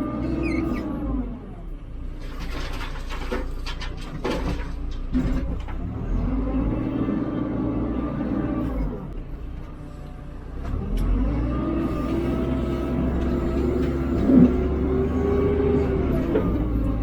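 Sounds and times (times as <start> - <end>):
diesel engine revving: 0.0 - 2.1, 5.1 - 17.0
knocks and clatter: 2.2 - 5.9.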